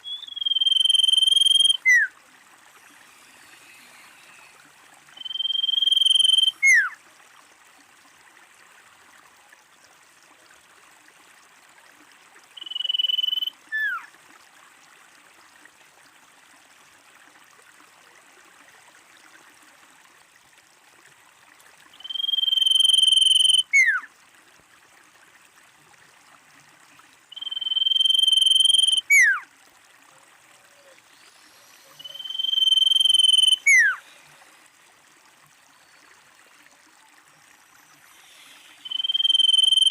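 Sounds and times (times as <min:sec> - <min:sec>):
bird whistling calls: 0:00.0 - 0:02.1, 0:05.2 - 0:06.9, 0:12.6 - 0:14.0, 0:22.0 - 0:24.1, 0:27.3 - 0:29.4, 0:31.4 - 0:34.1, 0:38.2 - 0:39.9
faint steady hiss: 0:00.0 - 0:39.9.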